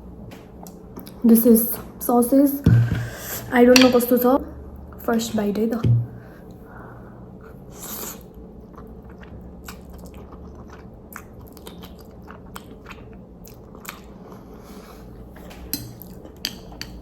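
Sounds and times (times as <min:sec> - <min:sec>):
person chewing noodles: 0:07.4 - 0:15.3.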